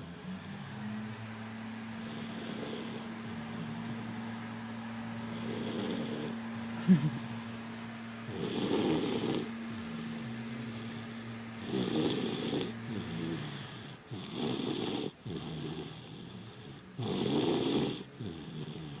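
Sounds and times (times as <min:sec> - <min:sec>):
quiet breathing: 0:01.9 - 0:04.3, 0:07.6 - 0:17.1
person snoring: 0:02.0 - 0:04.1, 0:05.2 - 0:07.3, 0:08.3 - 0:19.0.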